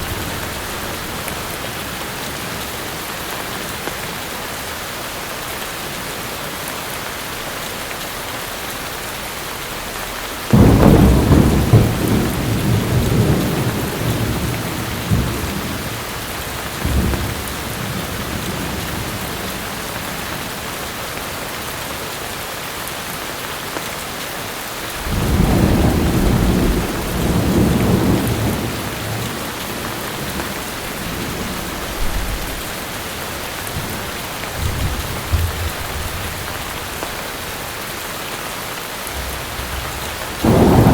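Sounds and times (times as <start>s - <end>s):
thunder rumbling: 0.0s - 2.6s, 10.5s - 20.4s, 24.9s - 37.5s, 39.1s - 40.9s
heavy rain: 0.0s - 40.9s.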